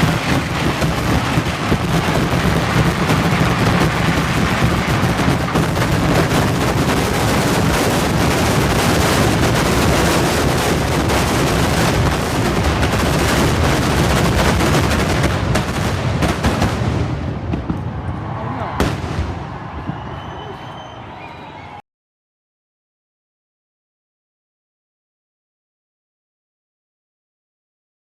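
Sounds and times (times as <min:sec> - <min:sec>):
rapid firecracker explosions: 0:00.0 - 0:20.7.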